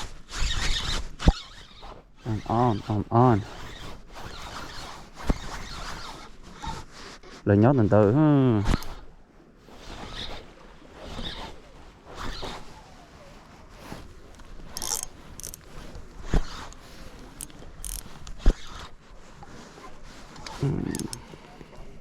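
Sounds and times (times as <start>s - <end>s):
fishing reel whirring and clicking: 0.4s - 3.0s, 14.3s - 18.9s, 20.4s - 21.3s.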